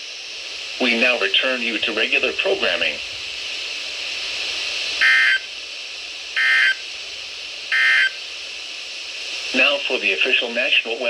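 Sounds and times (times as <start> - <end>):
steady radio hiss: 0.0 - 11.0
electronic data tone bursts: 5.0 - 5.5, 6.4 - 6.8, 7.7 - 8.2.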